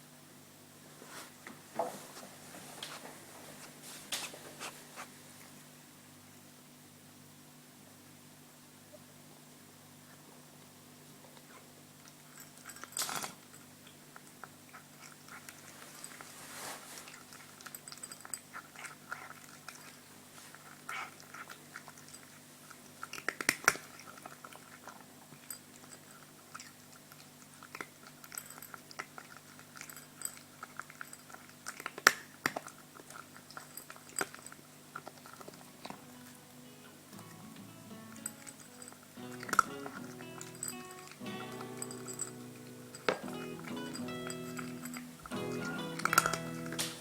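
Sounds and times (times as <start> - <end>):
cat chewing food: 11.2 - 47.0.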